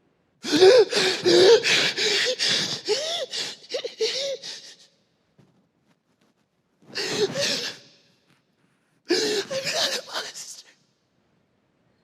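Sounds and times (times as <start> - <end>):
person sobbing and gasping: 0.4 - 4.9, 7.0 - 7.9, 9.1 - 10.5.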